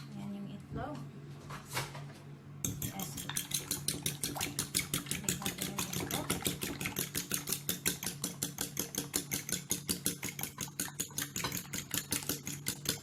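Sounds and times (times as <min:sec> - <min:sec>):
steady low hum: 0:00.0 - 0:13.0
utensil beating eggs in bowl: 0:02.6 - 0:13.0.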